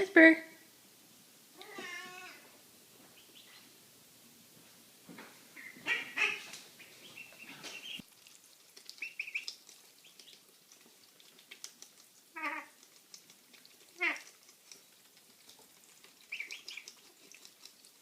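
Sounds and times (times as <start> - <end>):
pet chirping and squeaking: 16.2 - 17.5.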